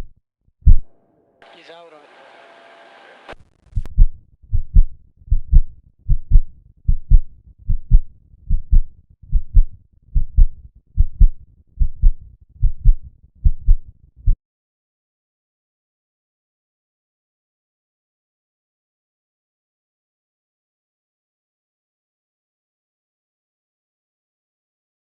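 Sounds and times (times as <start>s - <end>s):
heartbeat thumps: 0.6s - 0.9s, 3.8s - 14.4s.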